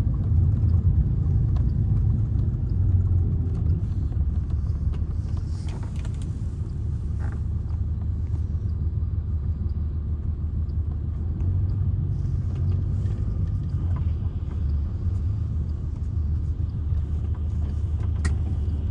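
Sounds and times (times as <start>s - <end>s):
diesel bus engine droning: 0.0s - 18.9s.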